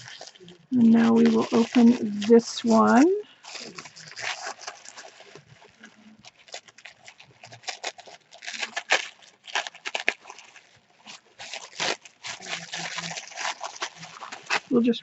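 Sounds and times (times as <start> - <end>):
package wrapping crinkling: 0.0 - 15.0.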